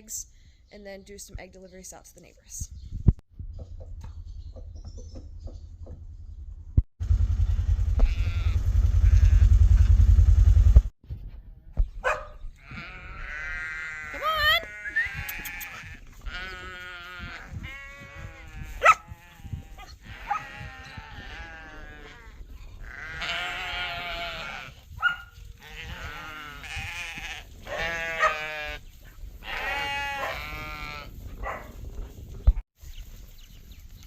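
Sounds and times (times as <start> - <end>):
sheep bleating: 8.0 - 9.6, 12.6 - 24.9, 25.6 - 31.2.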